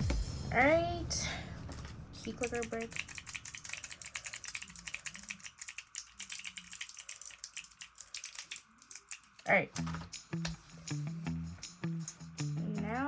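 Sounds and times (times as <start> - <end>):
fidget clicker clicking rapidly: 1.7 - 10.0.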